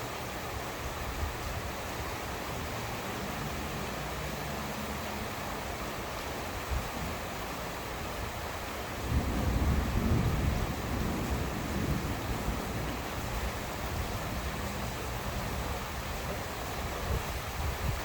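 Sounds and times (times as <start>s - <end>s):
steady rain falling: 0.0s - 18.0s
low rumble of thunder: 9.0s - 18.0s.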